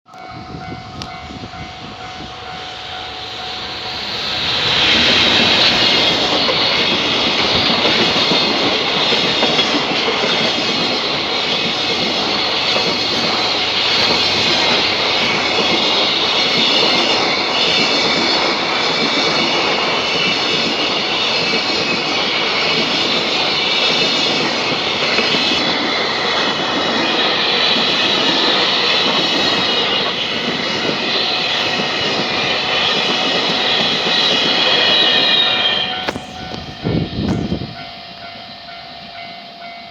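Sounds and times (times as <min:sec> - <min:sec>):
crossing alarm tones: 0:00.1 - 0:39.9
train rumble and wheel clatter: 0:00.1 - 0:39.9.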